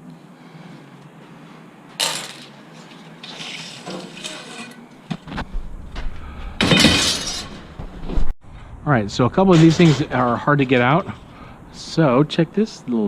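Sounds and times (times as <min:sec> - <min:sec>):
metal scrap clanking and rattling: 0:02.0 - 0:04.9, 0:06.6 - 0:07.8.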